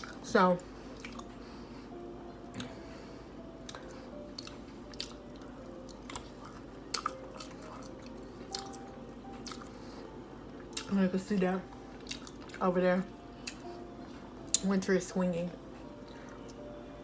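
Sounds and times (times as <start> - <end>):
person chewing food: 0.0 - 3.0, 3.6 - 10.9, 11.7 - 12.6, 13.3 - 14.6
faint background music: 0.0 - 17.0.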